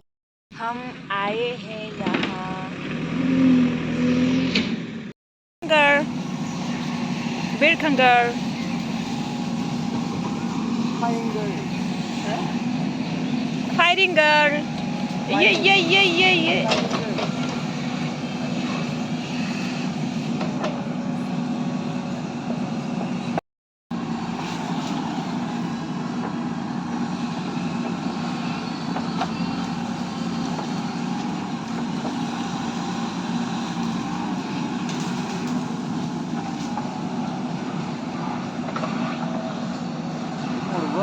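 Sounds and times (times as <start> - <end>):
vehicle engine and traffic drone: 0.5 - 41.0
constant low hum: 5.6 - 23.4.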